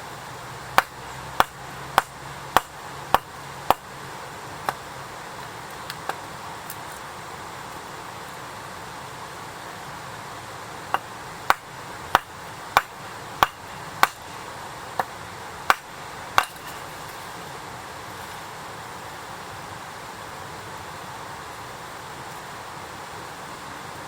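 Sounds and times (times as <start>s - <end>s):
steady hiss: 0.0s - 24.0s
sharp ringing knocks: 10.9s - 14.2s, 15.7s - 16.8s.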